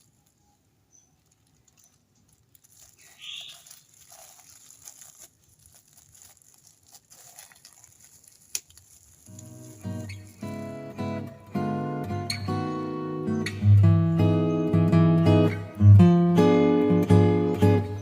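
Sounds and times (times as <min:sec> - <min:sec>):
packaging rustling and crinkling: 0:00.0 - 0:11.6
acoustic guitar music: 0:09.3 - 0:18.0.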